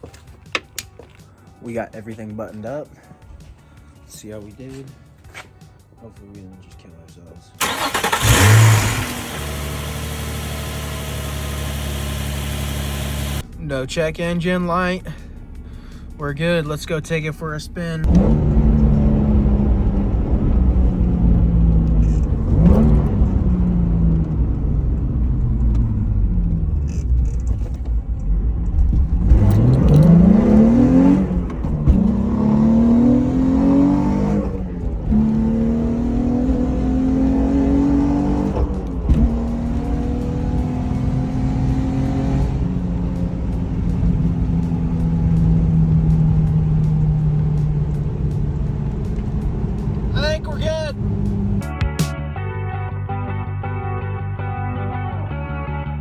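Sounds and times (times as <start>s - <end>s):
car engine revving through gears: 7.6s - 13.4s, 18.0s - 51.7s.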